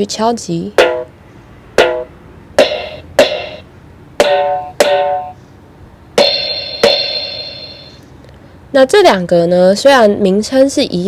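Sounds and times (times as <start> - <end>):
electronic drum sounds: 0.8 - 1.1, 1.8 - 3.6, 4.2 - 5.4, 6.2 - 8.0
drumstick hitting toy drum pads: 0.8 - 1.2, 1.8 - 3.6, 4.2 - 5.4, 6.2 - 8.0.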